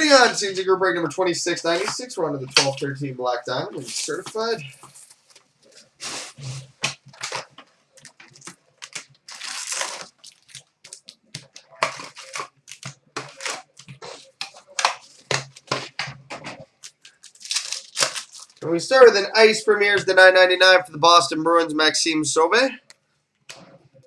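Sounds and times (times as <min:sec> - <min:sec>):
cards rustling: 0:03.8 - 0:16.0
packaging tearing and crinkling: 0:05.0 - 0:15.8, 0:16.8 - 0:18.6.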